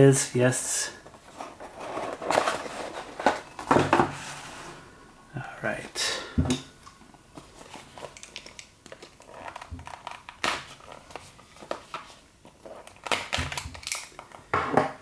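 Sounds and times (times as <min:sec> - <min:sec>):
cardboard box rustling: 0:01.0 - 0:04.8.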